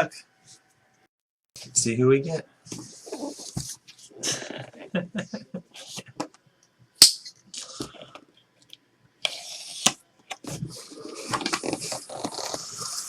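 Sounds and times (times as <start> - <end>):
cardboard and plastic crinkling: 11.0 - 13.0.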